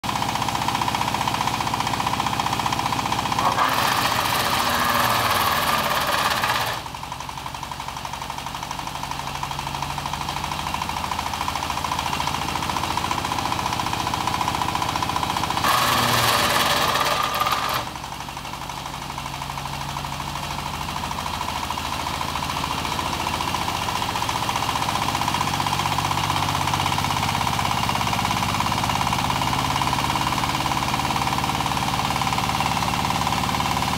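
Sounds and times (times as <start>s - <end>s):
wood crusher humming and whining: 0.1s - 7.2s, 10.9s - 18.8s, 20.6s - 33.9s
harsh crushing of wood: 3.4s - 6.8s, 15.6s - 17.9s.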